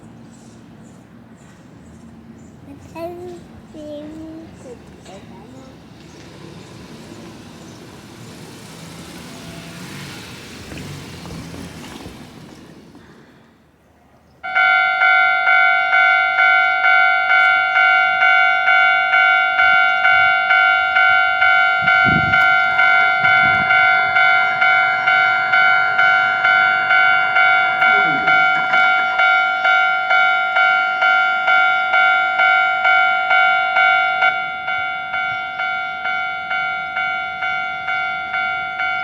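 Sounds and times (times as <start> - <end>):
rushing vehicle: 0.0 - 13.9, 19.6 - 39.0
level crossing warning bell: 14.4 - 39.0.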